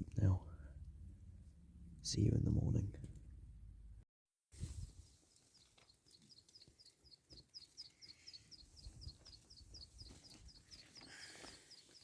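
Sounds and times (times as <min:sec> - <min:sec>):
small bird chirping: 0:05.3 - 0:12.0.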